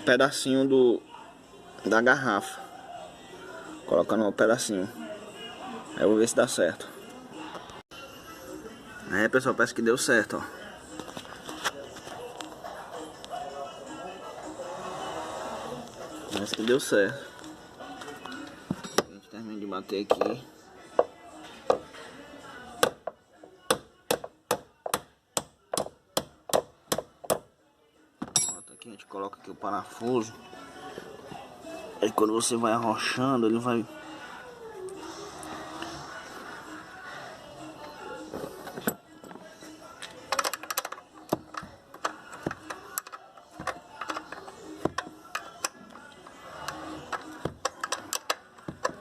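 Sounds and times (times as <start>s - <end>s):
hammer striking a screw: 23.7s - 27.5s
wrench clicking on bolt: 46.6s - 49.0s.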